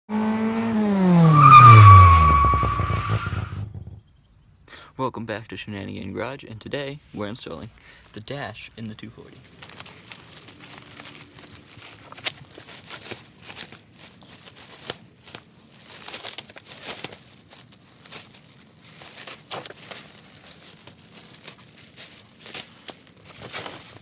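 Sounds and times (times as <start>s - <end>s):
rustling and crinkling: 6.9s - 24.0s
sharp clicks and crackles: 9.4s - 24.0s.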